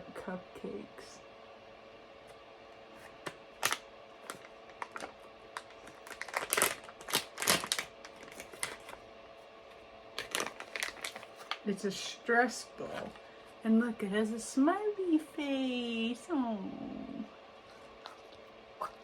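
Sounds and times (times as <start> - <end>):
plastic packaging crinkling: 3.0 - 9.1, 10.2 - 11.7.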